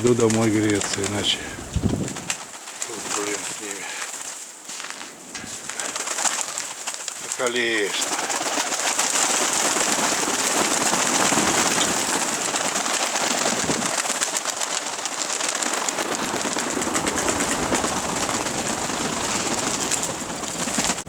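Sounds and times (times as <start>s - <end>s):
gusting wind on microphone: 0.0s - 3.8s, 9.6s - 14.0s, 16.2s - 21.0s.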